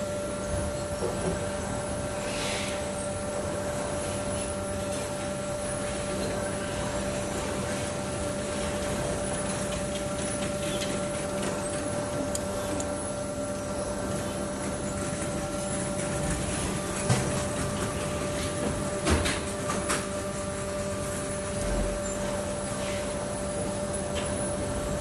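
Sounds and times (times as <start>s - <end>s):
steady mechanical hum: 0.0s - 25.0s.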